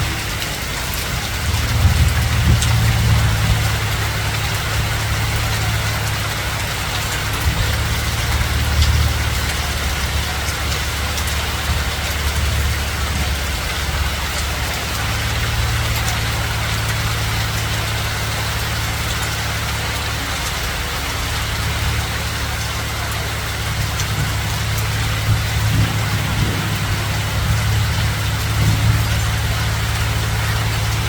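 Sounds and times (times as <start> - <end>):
faint ticks of hail: 0.0 - 31.0
hail and rain falling: 0.0 - 31.0.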